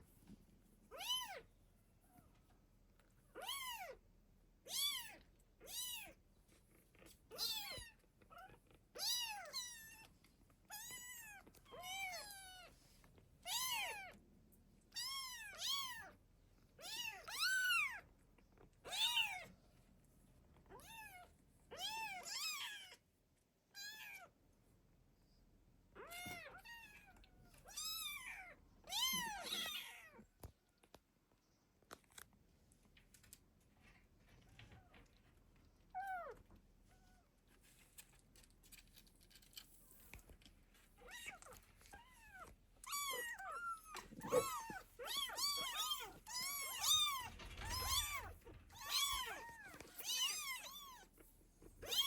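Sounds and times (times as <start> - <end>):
cats meowing: 7.0 - 10.1, 18.8 - 19.5, 26.0 - 30.2, 41.0 - 52.0.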